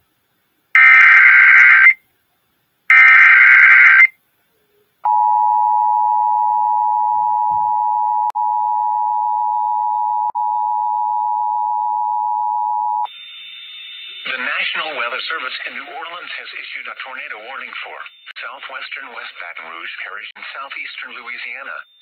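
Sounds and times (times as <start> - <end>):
digital data screech: 0.8 - 2.0, 2.9 - 4.1.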